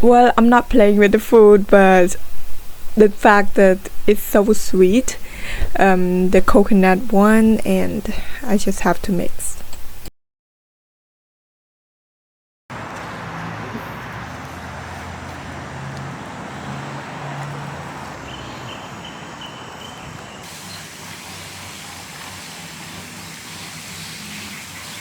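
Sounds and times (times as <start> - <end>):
vehicle road and engine noise: 12.7 - 20.6.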